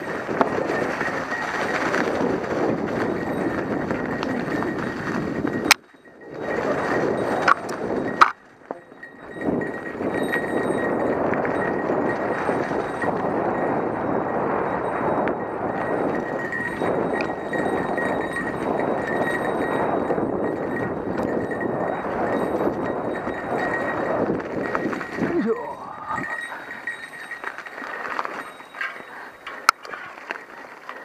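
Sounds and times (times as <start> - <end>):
bike rattling and tyre noise: 0.0 - 31.0.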